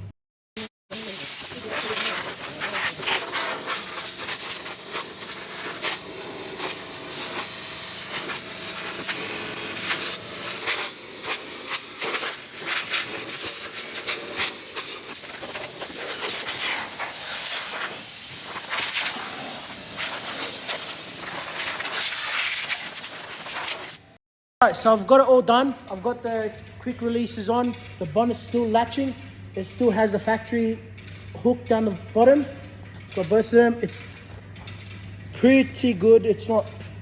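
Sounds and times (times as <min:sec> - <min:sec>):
compressed air blow gun hissing: 0:00.6 - 0:24.2.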